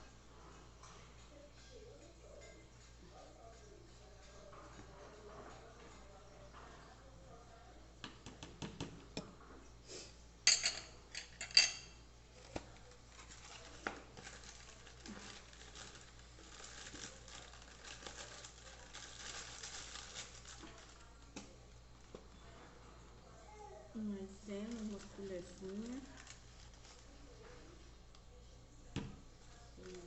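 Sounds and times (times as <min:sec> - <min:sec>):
utensils clinking on dishes: 0:10.5 - 0:12.0.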